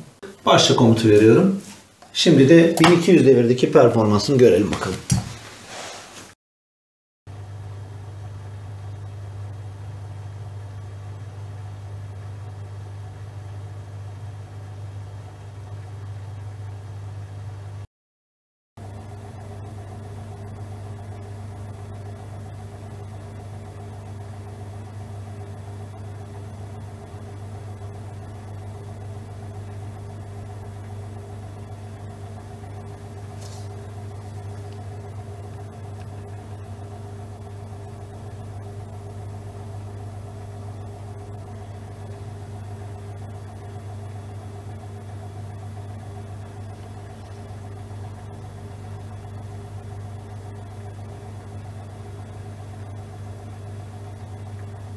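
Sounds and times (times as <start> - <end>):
washing machine spinning hum: 0.0 - 6.1, 7.3 - 17.8, 18.8 - 54.9.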